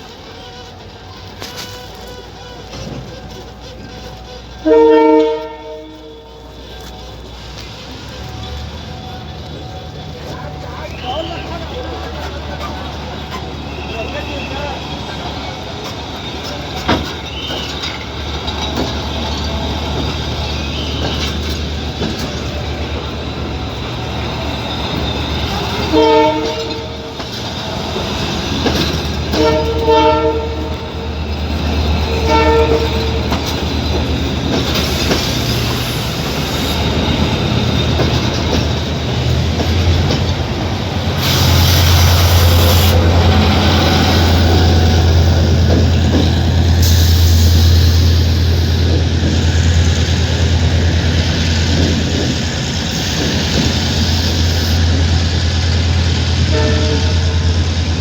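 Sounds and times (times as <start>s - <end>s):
train horn blasts: 0.0s - 7.0s, 25.6s - 27.3s, 28.7s - 31.1s, 31.9s - 33.6s, 56.3s - 57.7s
train rumbling: 0.0s - 58.0s.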